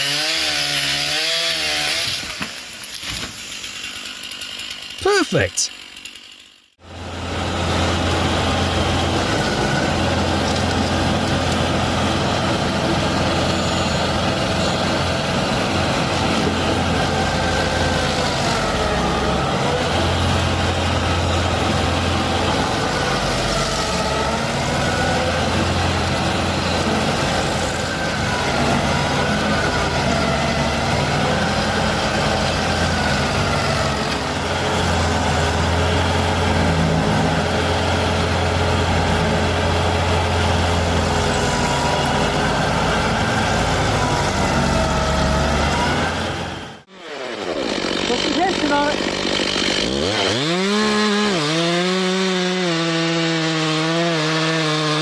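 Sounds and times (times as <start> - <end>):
heavy truck engine running: 6.8 - 49.3.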